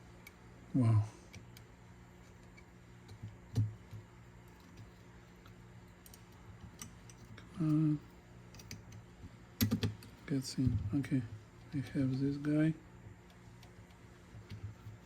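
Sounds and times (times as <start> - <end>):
metal parts clicking and tapping: 2.3 - 7.8.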